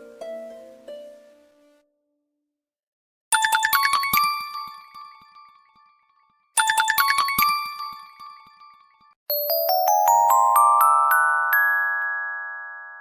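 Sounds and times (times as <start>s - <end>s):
bright bell-like phone chime: 3.4s - 5.6s, 6.6s - 13.0s.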